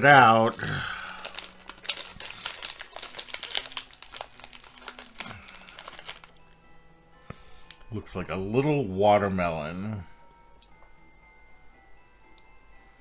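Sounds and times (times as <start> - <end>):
plastic wrapper crinkling: 0.0 - 6.4, 7.6 - 7.9.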